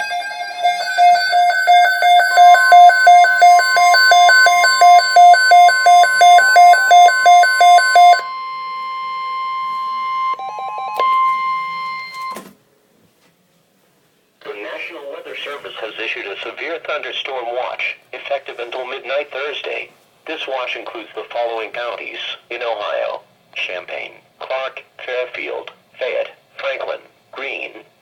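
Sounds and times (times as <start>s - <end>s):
warbling two-tone alarm beeping: 0.0s - 8.4s
steady high warning tone: 0.0s - 12.3s.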